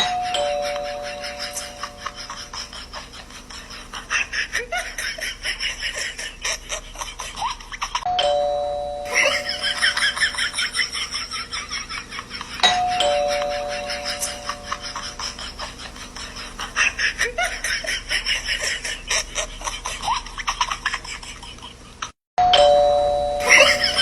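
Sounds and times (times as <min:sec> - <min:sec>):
two-tone doorbell chime: 0:00.0 - 0:02.8, 0:08.1 - 0:11.2, 0:12.6 - 0:15.4, 0:22.4 - 0:24.0.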